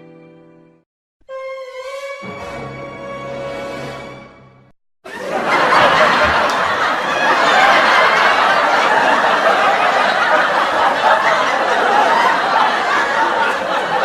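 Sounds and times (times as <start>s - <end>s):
crowd laughing: 5.1s - 14.0s.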